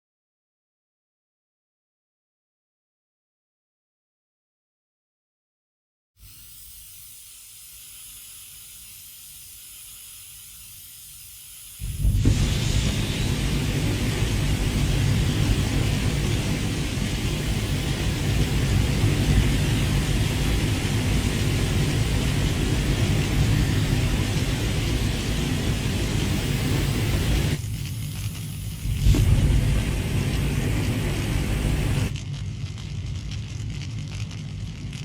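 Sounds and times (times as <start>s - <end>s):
pressurised gas hissing: 6.2s - 32.1s
flamethrower fire blast: 6.2s - 35.0s.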